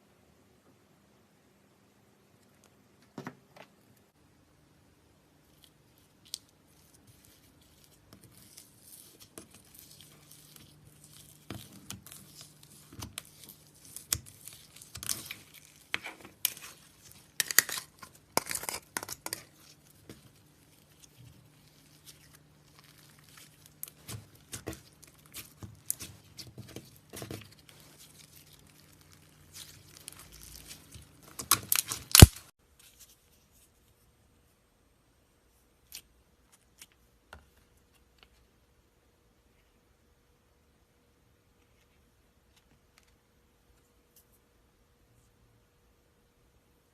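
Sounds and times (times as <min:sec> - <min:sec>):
slime crackling and popping: 0:05.6 - 0:32.5.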